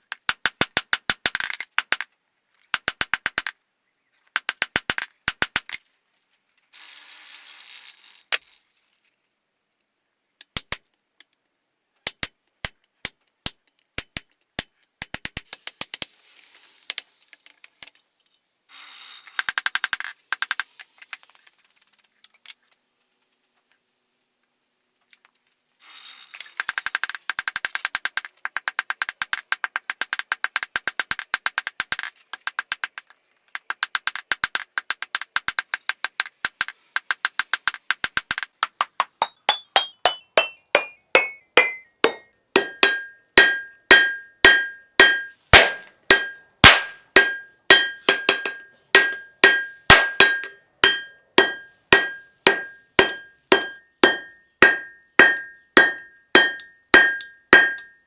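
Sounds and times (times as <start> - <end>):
hammer striking steel on anvil: 37.0 - 58.0.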